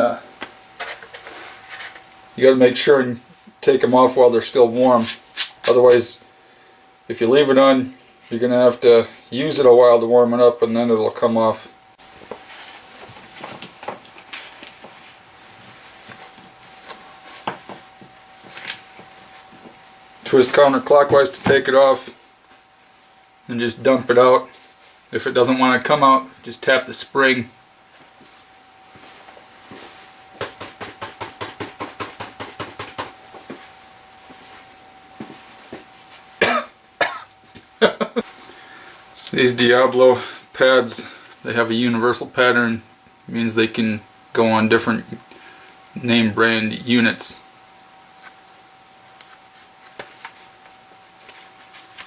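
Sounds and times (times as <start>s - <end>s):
faint steady hum: 0.0s - 52.0s.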